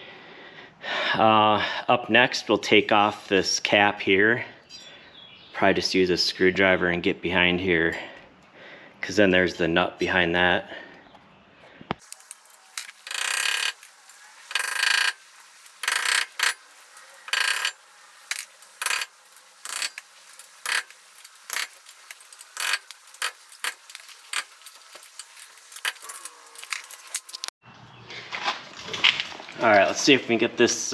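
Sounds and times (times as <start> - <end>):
metal tool scraping and clicking: 12.0 - 27.5.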